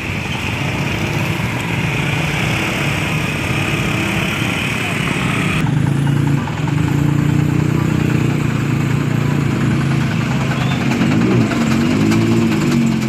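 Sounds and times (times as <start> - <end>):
chainsaw engine idling: 4.4 - 13.0.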